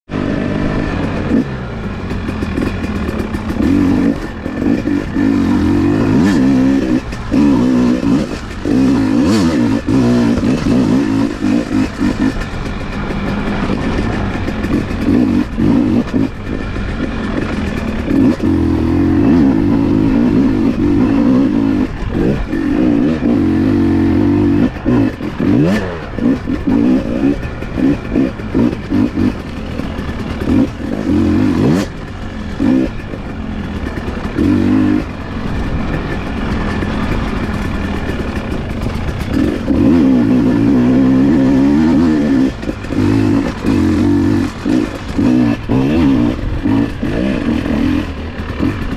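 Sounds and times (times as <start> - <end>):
motorcycle engine revving: 0.1 - 48.9
clatter and knocks: 35.4 - 40.0, 42.5 - 45.6.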